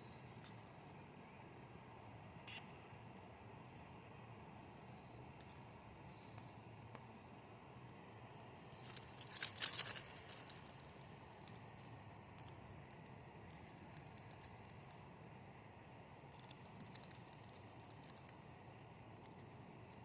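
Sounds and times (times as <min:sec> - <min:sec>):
crinkling and rustling: 0:08.7 - 0:13.0.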